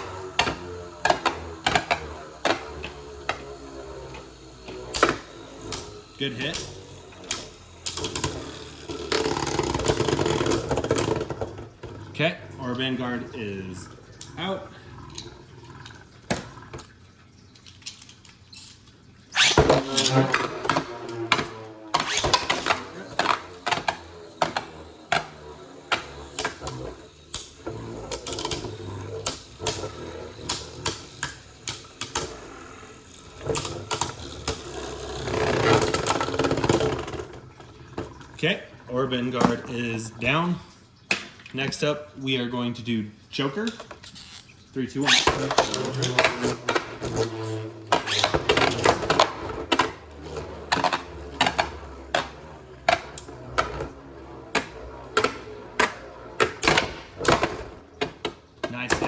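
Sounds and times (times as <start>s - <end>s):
spinning tops clacking: 0.0s - 11.6s, 17.5s - 38.4s, 45.0s - 59.0s.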